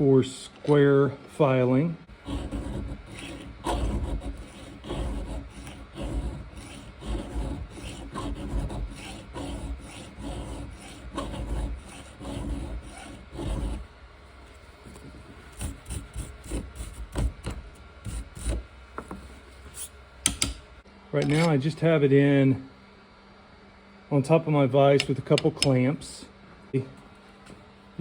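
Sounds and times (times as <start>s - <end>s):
file rasping on chainsaw chain: 2.2s - 13.8s.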